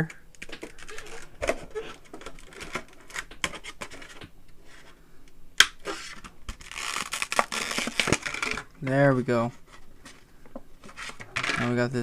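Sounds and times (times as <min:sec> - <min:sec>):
plastic packaging crackling: 0:00.3 - 0:04.2, 0:05.9 - 0:08.7.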